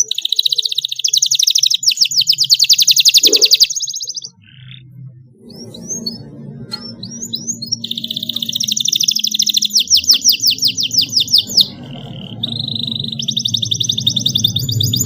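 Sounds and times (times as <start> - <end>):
canary singing trills: 0.0 - 15.0
low drone: 4.3 - 15.0.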